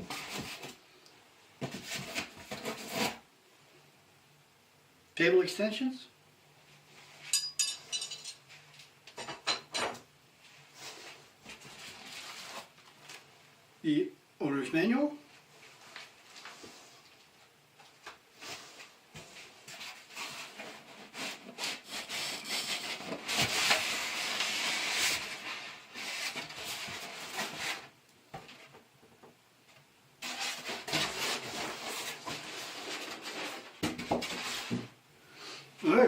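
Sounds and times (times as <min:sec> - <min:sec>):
cardboard scraping and rubbing: 0:00.0 - 0:00.8, 0:01.6 - 0:03.2, 0:10.9 - 0:12.8, 0:18.4 - 0:27.9, 0:30.2 - 0:35.0.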